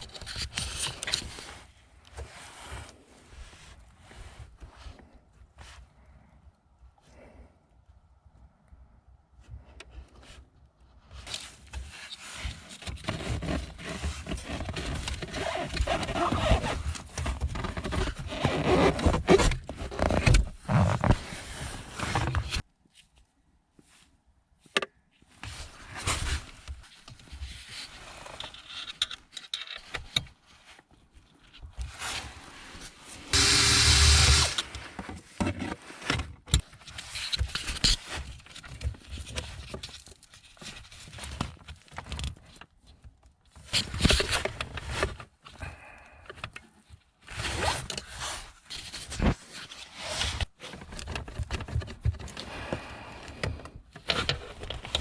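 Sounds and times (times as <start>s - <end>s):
tools and parts clicking and rattling: 28.4s - 30.2s
small electric motor whirring: 33.3s - 34.7s.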